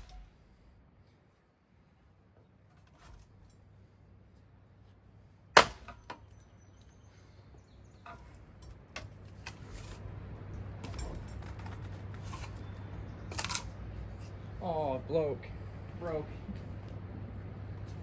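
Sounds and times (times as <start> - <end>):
fan motor hum: 2.7 - 18.0
fan whirring rush: 8.0 - 18.0.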